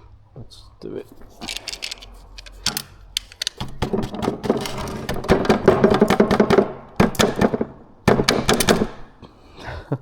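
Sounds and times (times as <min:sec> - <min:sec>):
power tool ratcheting: 0:01.3 - 0:05.4.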